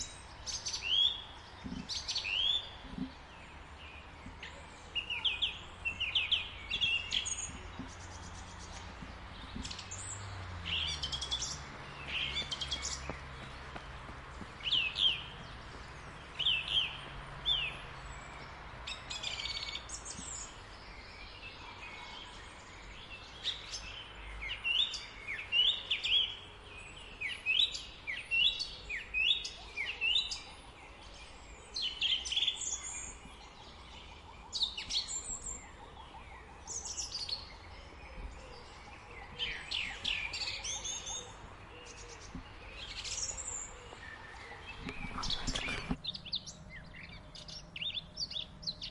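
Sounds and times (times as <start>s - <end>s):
small birds chirping: 0.0s - 48.9s.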